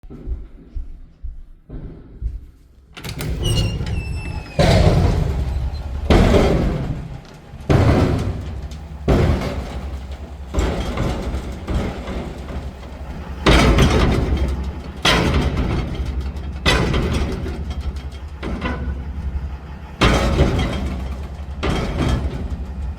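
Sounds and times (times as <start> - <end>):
loud bangs with rumbling decay: 4.6 - 17.8.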